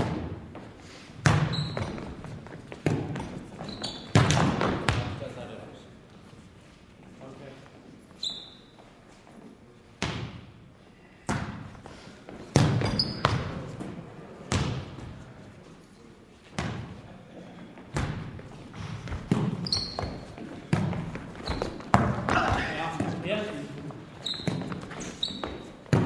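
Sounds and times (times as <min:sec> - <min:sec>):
soccer ball kicks echoing: 0:01.2 - 0:05.2, 0:17.9 - 0:23.2
short high squeaks: 0:03.6 - 0:04.1, 0:08.2 - 0:08.8, 0:19.6 - 0:20.3, 0:24.2 - 0:25.7.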